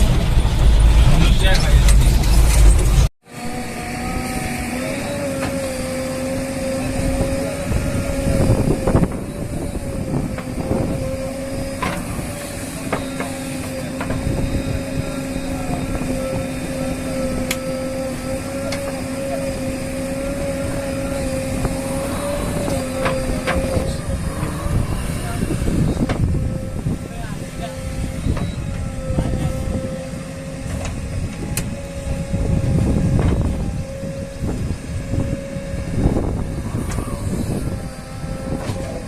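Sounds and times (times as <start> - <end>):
heavy diesel machinery running: 0.0 - 39.0.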